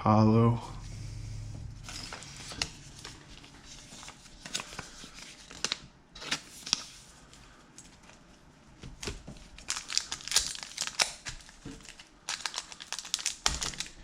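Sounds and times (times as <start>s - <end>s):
cards rustling in plastic sleeves: 1.8s - 8.3s, 9.0s - 14.0s.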